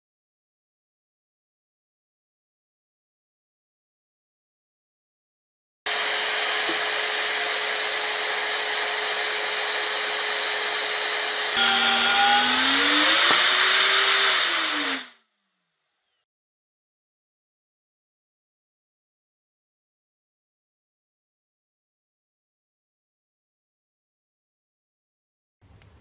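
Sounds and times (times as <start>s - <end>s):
magnetic drill whining: 5.9s - 15.2s.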